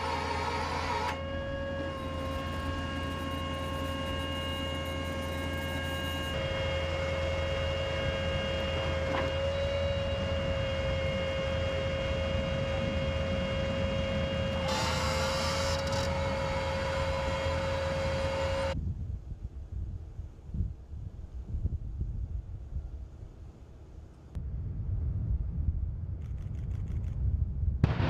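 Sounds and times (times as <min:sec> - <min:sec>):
vehicle whine: 0:00.0 - 0:18.8
low engine rumble: 0:00.0 - 0:19.5.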